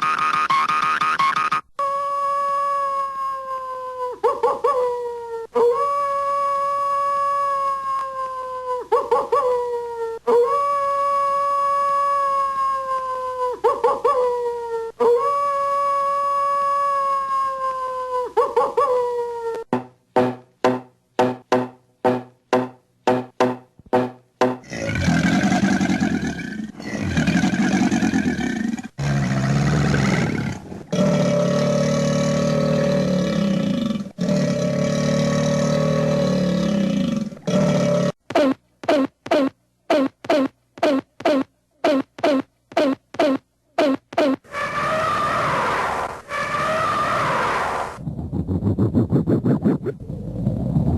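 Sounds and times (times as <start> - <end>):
cartoon dog howling: 1.8 - 19.7, 44.4 - 48.0.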